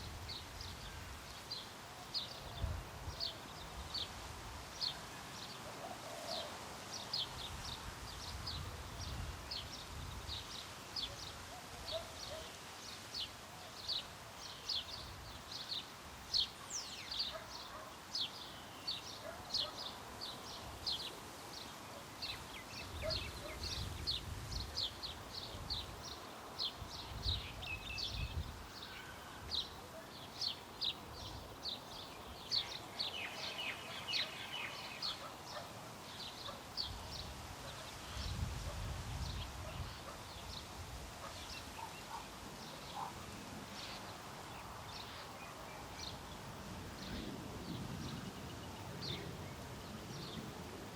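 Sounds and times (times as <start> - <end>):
light wind: 0.0 - 50.9
birds chirping: 0.3 - 38.4, 39.2 - 50.5.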